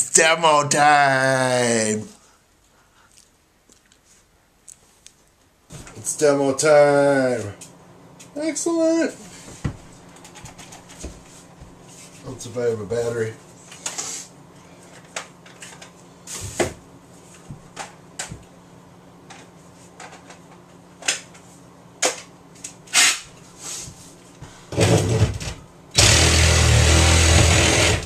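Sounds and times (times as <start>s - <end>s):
cordless power tool running: 26.0s - 28.0s.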